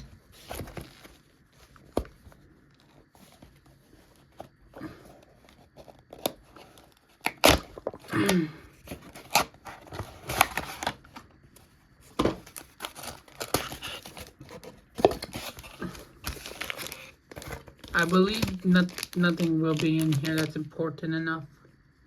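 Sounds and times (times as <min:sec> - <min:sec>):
packaging ripping and crinkling: 0:05.8 - 0:08.3, 0:08.9 - 0:11.2, 0:12.2 - 0:20.6.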